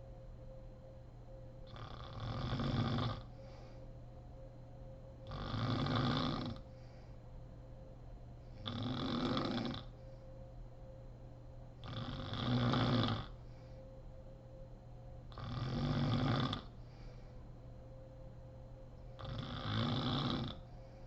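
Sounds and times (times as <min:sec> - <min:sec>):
woman snoring: 0:01.7 - 0:03.4, 0:05.2 - 0:06.6, 0:08.6 - 0:10.0, 0:11.8 - 0:13.4, 0:15.3 - 0:16.8, 0:19.2 - 0:20.8.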